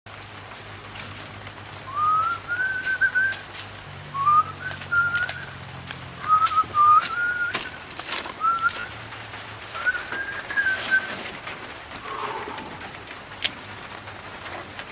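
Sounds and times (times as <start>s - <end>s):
whistled phrases: 1.9s - 3.4s, 4.2s - 5.6s, 6.2s - 7.8s, 8.4s - 8.9s, 9.8s - 11.1s.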